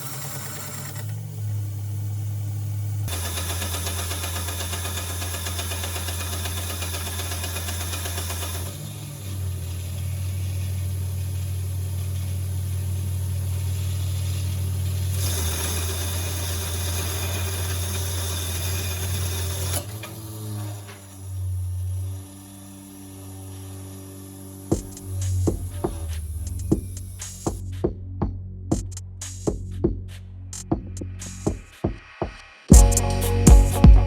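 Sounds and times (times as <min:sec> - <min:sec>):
belt grinder motor humming: 0:00.0 - 0:26.7
hiss: 0:00.0 - 0:27.6.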